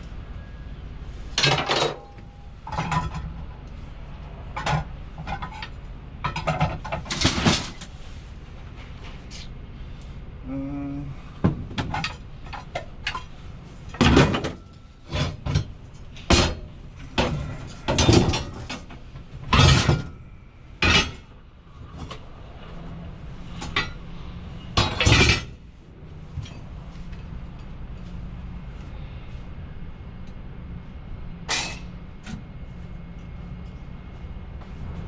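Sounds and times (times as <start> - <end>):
scrap metal clanking: 13.9 - 21.3, 23.4 - 25.6, 31.5 - 31.9.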